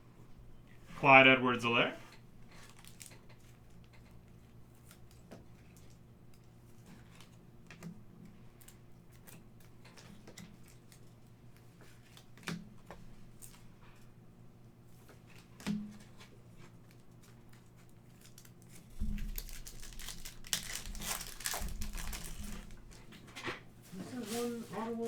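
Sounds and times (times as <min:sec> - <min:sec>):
card pack wrapper tearing: 0:19.2 - 0:23.0.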